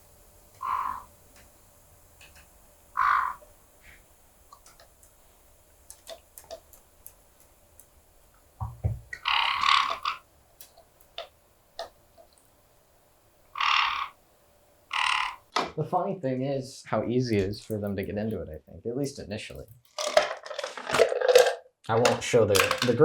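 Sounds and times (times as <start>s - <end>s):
parrots squawking: 0.6s - 1.1s, 3.0s - 3.4s, 9.1s - 10.2s, 13.5s - 14.2s, 14.9s - 15.5s
dull thump: 8.6s - 9.1s.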